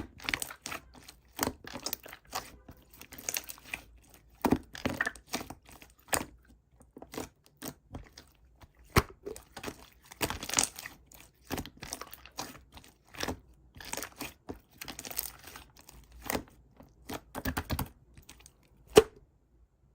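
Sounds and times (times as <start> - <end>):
slime crackling and popping: 8.8 - 18.4.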